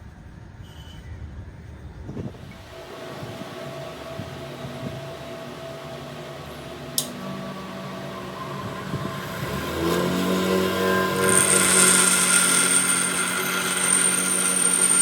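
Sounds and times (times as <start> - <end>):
machine motor humming: 2.8 - 15.0
motor spinning up: 4.7 - 15.0
sharp metallic click: 7.0 - 7.2.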